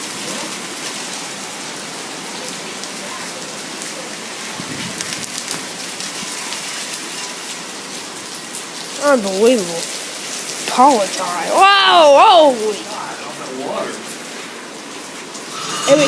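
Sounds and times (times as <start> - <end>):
heavy rain pouring: 0.0 - 16.0.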